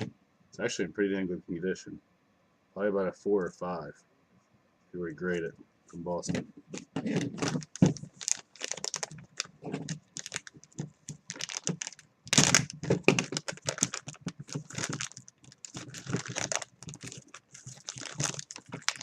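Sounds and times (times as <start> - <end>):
plastic cases clicking: 6.3 - 19.0
plastic packaging crinkling: 6.3 - 19.0.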